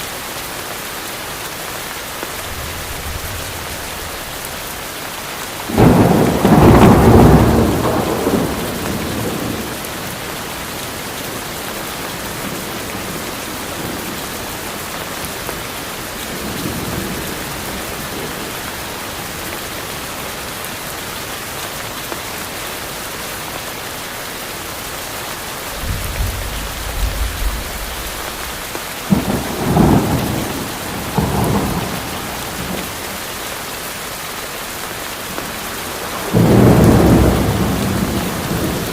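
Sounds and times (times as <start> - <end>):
heavy rainfall: 0.0 - 38.9
thunder: 2.4 - 4.6, 5.7 - 9.8, 25.7 - 32.8, 36.1 - 38.9.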